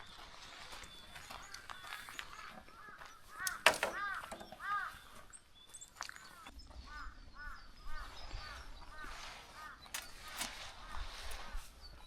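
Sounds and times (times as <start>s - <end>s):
crow cawing: 2.7s - 5.2s.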